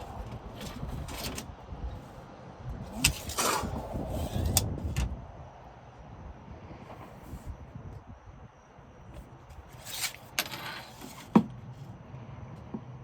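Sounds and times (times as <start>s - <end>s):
objects scraping and knocking: 0.0s - 1.5s, 2.9s - 5.1s, 9.2s - 11.6s.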